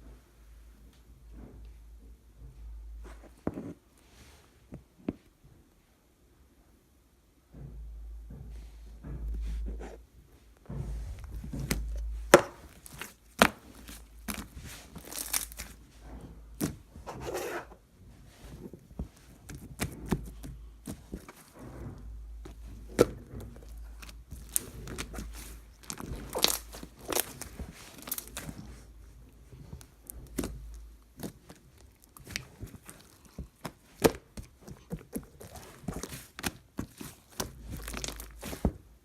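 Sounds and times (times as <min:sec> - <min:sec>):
steady low rumble: 0:07.7 - 0:13.4
handling knocks and taps: 0:10.6 - 0:17.3.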